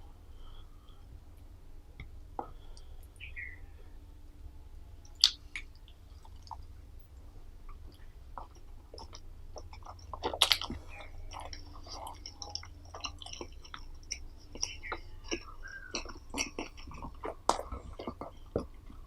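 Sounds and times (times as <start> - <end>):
person chewing food: 5.1 - 6.8, 7.7 - 19.0
wet mouth smacks and clicks: 5.2 - 6.6, 9.0 - 10.8
loud bite: 10.2 - 10.8.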